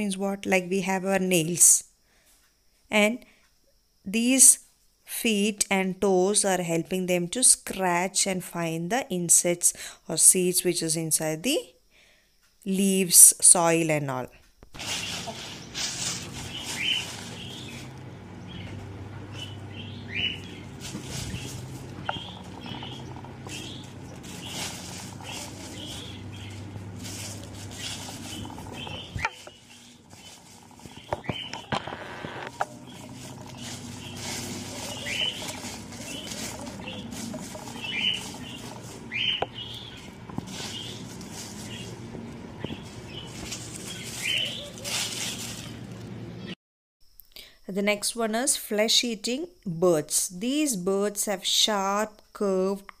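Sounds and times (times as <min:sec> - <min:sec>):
low steady hum: 0:13.9 - 0:46.6
small birds chirping: 0:14.7 - 0:46.6.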